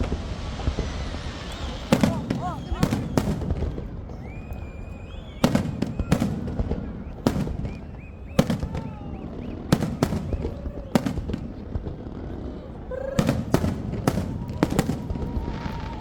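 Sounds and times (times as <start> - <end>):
firework whistling: 0.0 - 16.0
fireworks bangs: 0.0 - 16.0.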